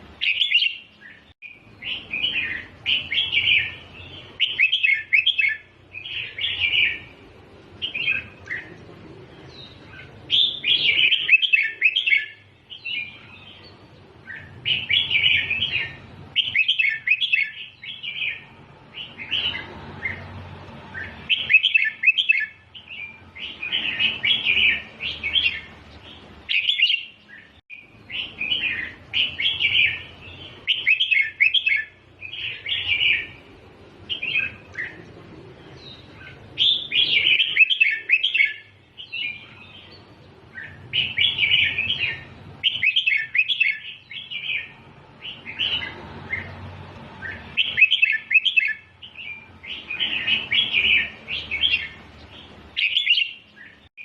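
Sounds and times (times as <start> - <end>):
bird singing short phrases: 0.2 - 7.2, 9.4 - 20.2, 47.2 - 53.9.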